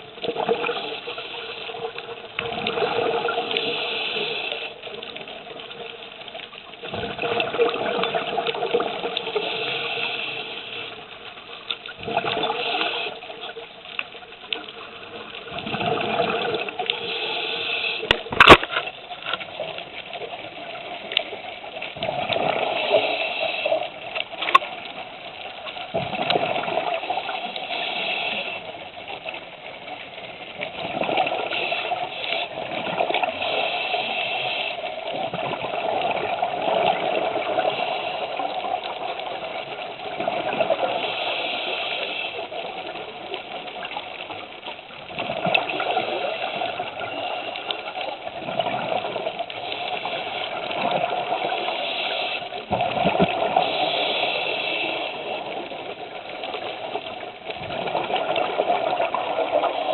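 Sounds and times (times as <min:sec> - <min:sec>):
bubbling exhaust underwater: 0:00.0 - 0:06.0, 0:06.7 - 0:11.2, 0:11.9 - 0:59.9
regulator hissing inhalations: 0:03.4 - 0:04.8, 0:09.3 - 0:11.0, 0:16.9 - 0:18.2, 0:22.7 - 0:24.0, 0:27.4 - 0:28.7, 0:33.3 - 0:35.0, 0:41.0 - 0:42.5, 0:51.5 - 0:52.5, 0:53.6 - 0:55.4.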